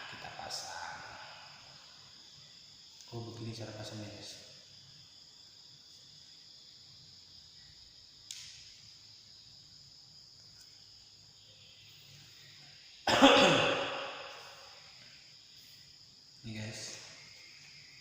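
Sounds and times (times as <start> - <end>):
insects chirring: 0.0 - 18.0
man coughing: 13.1 - 14.0.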